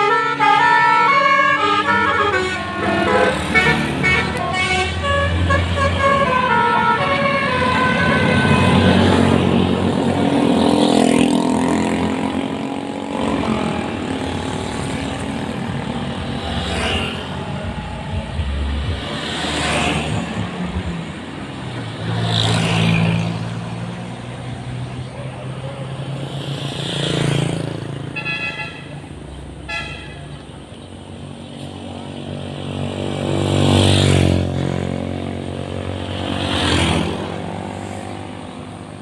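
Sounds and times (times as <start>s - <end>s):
melodic multi-tone bus horn: 0.0s - 11.4s, 28.0s - 30.4s
heavy vehicles passing by: 0.0s - 39.0s
low engine drone: 13.3s - 21.4s.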